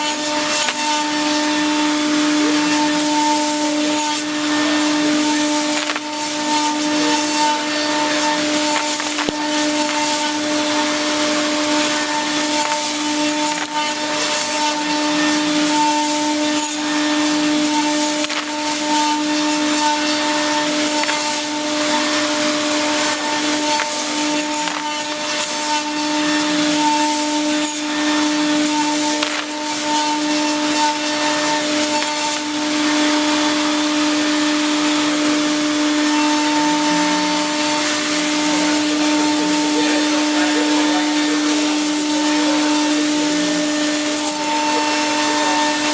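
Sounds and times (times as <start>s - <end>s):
milling machine steady tone: 0.0s - 34.6s.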